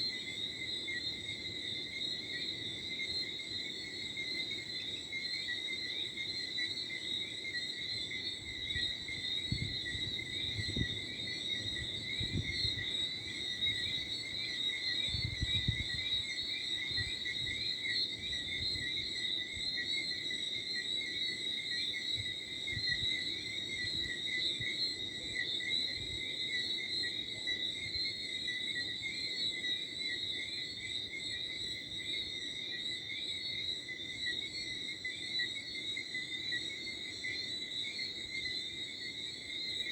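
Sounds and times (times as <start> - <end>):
crickets chirping: 0.0 - 39.9
frogs croaking: 0.0 - 39.9
light wind rumble: 15.0 - 16.2.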